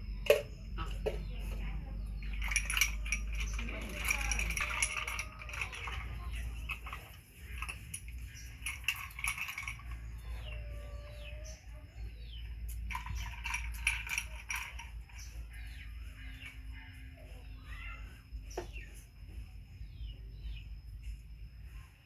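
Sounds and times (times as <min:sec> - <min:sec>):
chickens clucking: 0:03.4 - 0:13.3.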